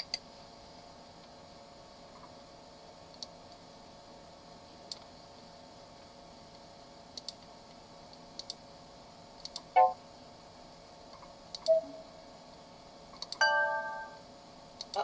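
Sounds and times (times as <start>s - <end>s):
mouse clicks: 8.4s - 8.6s
short computer alert tones: 9.8s - 10.0s, 13.4s - 14.2s.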